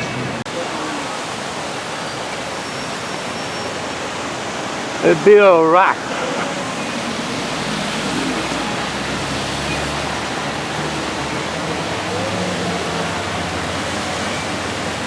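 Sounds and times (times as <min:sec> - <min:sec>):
waterfall pouring: 0:00.5 - 0:15.0
faint voices: 0:03.2 - 0:15.0.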